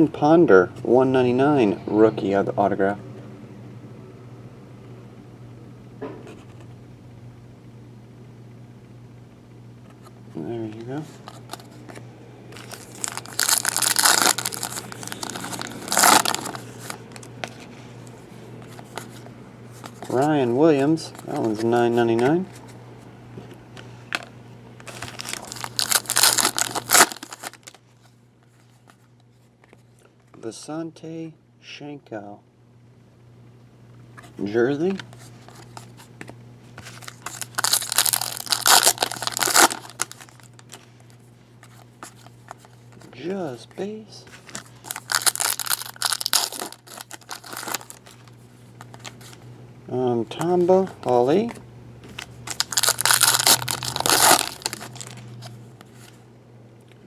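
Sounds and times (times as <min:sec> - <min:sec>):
plastic wrapper crinkling: 0:12.6 - 0:17.6, 0:24.8 - 0:27.8, 0:36.8 - 0:40.8, 0:44.5 - 0:49.2, 0:52.2 - 0:55.5.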